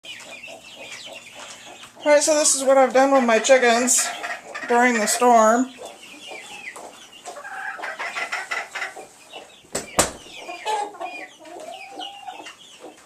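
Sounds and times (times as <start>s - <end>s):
chickens clucking: 0.0s - 13.0s
sharp knocks: 9.7s - 10.3s.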